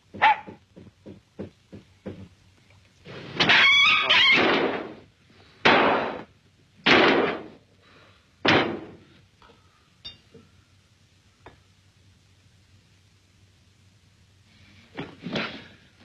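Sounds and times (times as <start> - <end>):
loud crashes: 3.4 - 5.0.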